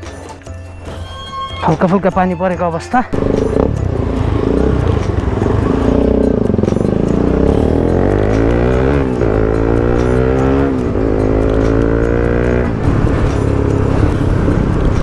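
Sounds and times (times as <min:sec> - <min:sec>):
motorcycle engine revving: 0:03.1 - 0:15.0.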